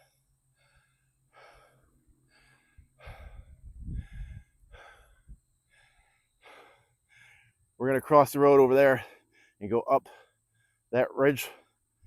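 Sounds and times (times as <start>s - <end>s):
person breathing hard: 0.0s - 7.8s, 9.0s - 10.9s
low rumble on microphone: 3.0s - 5.4s.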